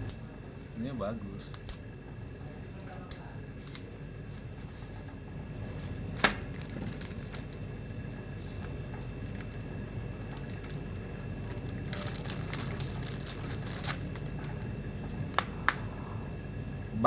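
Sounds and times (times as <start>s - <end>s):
low background rumble: 5.2s - 17.0s
packaging rustling: 5.8s - 7.7s, 11.4s - 14.7s.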